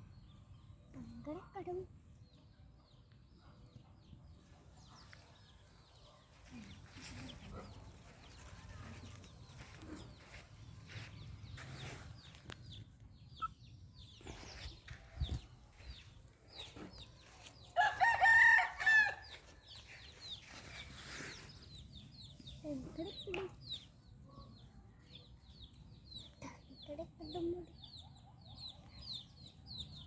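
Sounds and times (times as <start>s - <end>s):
fowl calls and chirps: 17.0s - 21.4s
rooster crowing: 17.8s - 19.3s.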